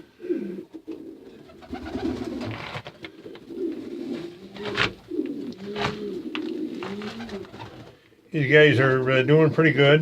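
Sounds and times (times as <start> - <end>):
pigeons cooing: 0.2 - 8.0.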